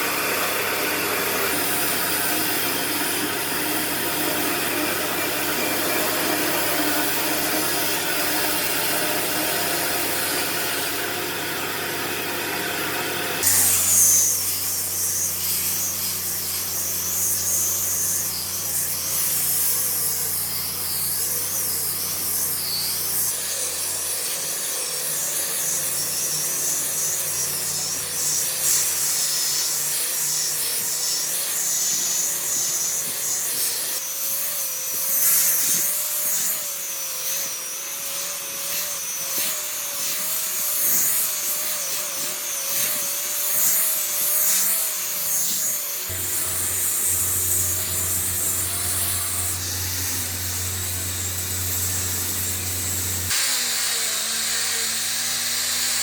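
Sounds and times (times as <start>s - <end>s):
hissy high-pitched tool noise: 0.0s - 56.0s
power tool working on wood: 0.0s - 56.0s
steady low hum: 46.1s - 53.4s.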